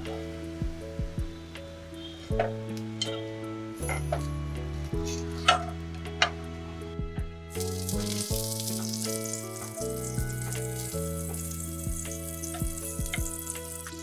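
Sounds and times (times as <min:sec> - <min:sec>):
soft background music: 0:00.0 - 0:14.0
food sizzling in a pan: 0:07.5 - 0:14.0.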